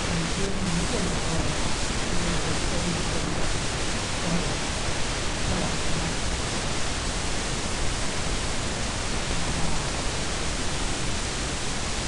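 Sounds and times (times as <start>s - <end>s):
recording noise hiss: 0.0s - 12.0s.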